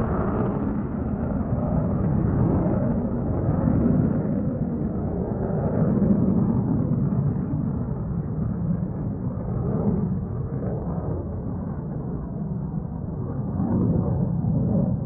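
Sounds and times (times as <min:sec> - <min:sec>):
airplane engine rumble: 0:00.0 - 0:05.2.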